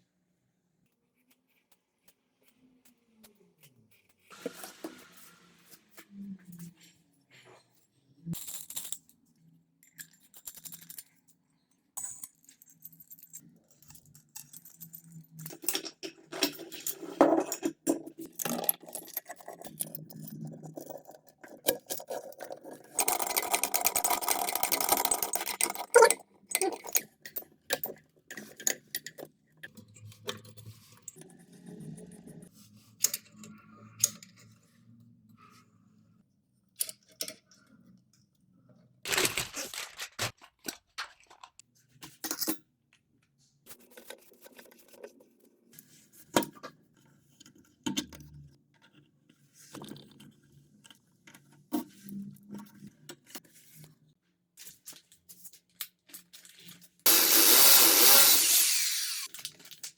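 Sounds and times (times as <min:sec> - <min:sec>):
metal parts clinking: 0:12.0 - 0:29.3, 0:57.1 - 0:59.4
rasping burst: 0:57.1 - 0:59.3.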